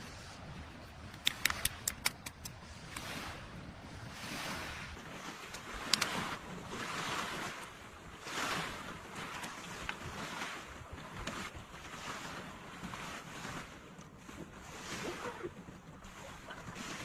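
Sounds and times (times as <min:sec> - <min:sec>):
sea surf washing on shore: 0:00.0 - 0:17.0
sharp clicks: 0:01.2 - 0:02.6.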